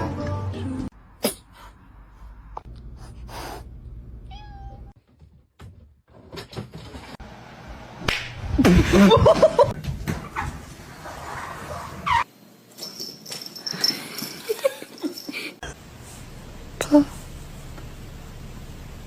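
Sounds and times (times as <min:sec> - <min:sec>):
cat meowing: 0:04.3 - 0:04.9.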